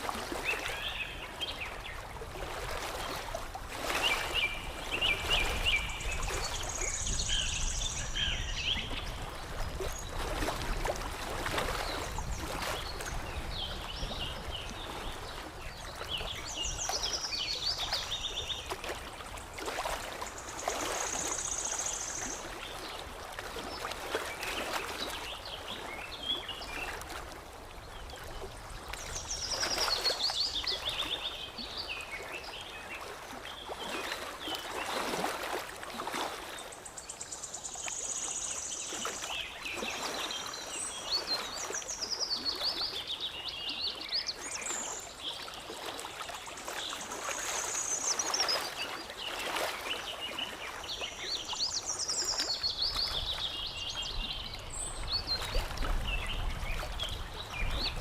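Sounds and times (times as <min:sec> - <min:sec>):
water lapping and trickling: 0:00.0 - 0:58.0
songbirds singing: 0:03.9 - 0:10.4, 0:11.8 - 0:19.0, 0:19.6 - 0:23.0, 0:36.6 - 0:58.0.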